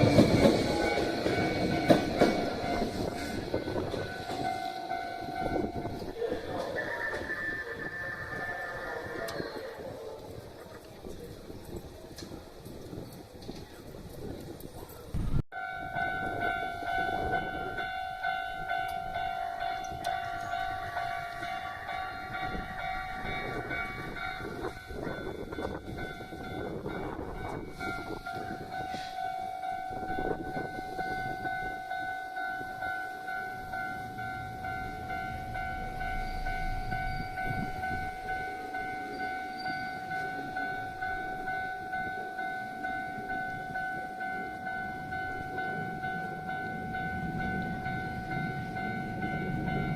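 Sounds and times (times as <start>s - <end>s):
level-crossing warning bell: 0.0s - 14.4s, 15.0s - 49.9s
train rumbling on rails: 0.0s - 49.9s.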